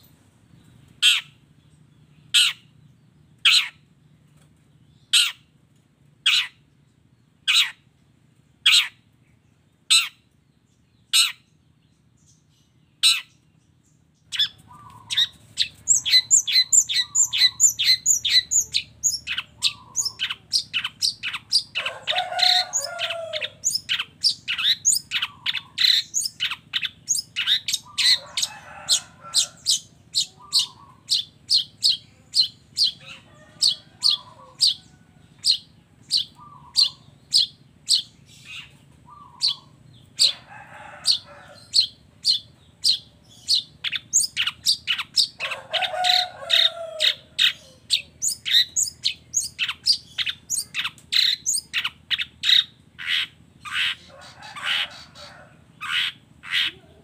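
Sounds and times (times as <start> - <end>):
bird harsh chattering: 1.0 - 1.4, 2.3 - 2.7, 3.4 - 3.8, 6.2 - 6.6, 7.5 - 7.8, 8.7 - 9.0, 13.0 - 13.4, 14.3 - 57.0.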